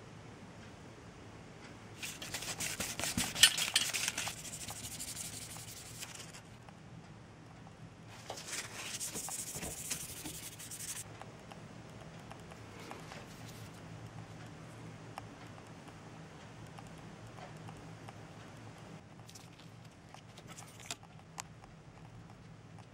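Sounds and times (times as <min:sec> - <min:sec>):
rubbing and scraping: 0:02.0 - 0:06.5, 0:08.2 - 0:11.0.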